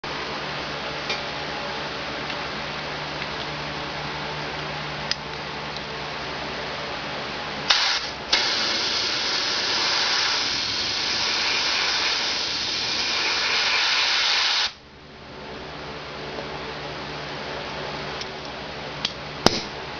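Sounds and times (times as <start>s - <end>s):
compressed air blow gun hissing: 7.7s - 14.8s.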